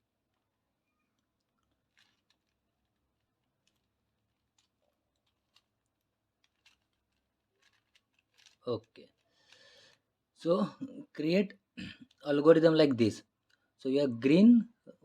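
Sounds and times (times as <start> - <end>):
puzzle cube layers clicking: 6.4 - 9.0.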